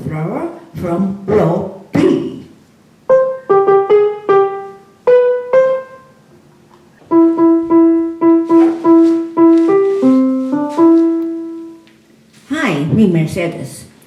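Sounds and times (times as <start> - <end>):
piano keyboard melody: 3.0 - 12.0.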